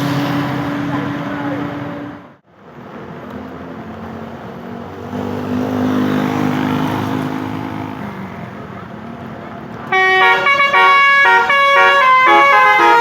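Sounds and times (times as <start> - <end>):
bus engine passing: 0.0 - 13.0.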